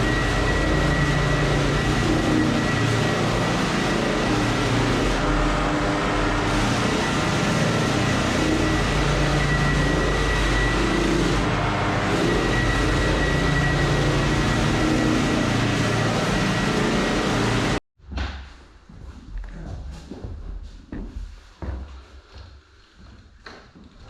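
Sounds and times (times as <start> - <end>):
floor sanding machine running: 0.0 - 17.8.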